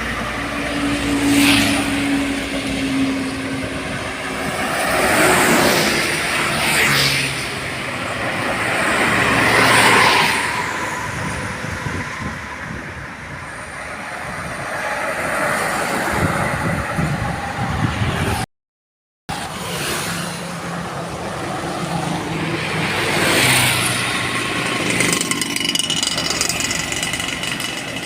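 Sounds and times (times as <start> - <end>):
vehicle passing at speed: 0.0 - 18.4, 19.4 - 27.7
road traffic noise: 0.0 - 18.5, 19.3 - 28.0.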